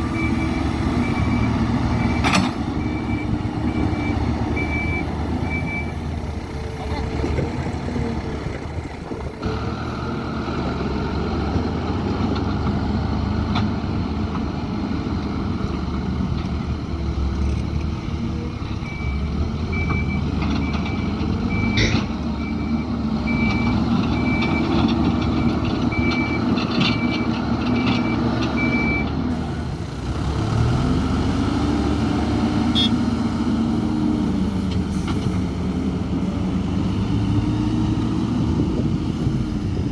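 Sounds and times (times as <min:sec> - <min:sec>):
diesel engine working: 0:00.0 - 0:39.9
reversing alarm beeping: 0:00.1 - 0:06.0, 0:18.8 - 0:29.1, 0:32.7 - 0:33.0.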